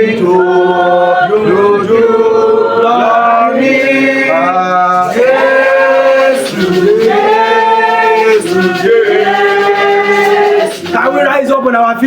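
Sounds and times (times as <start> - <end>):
man singing worship song: 0.0 - 12.0.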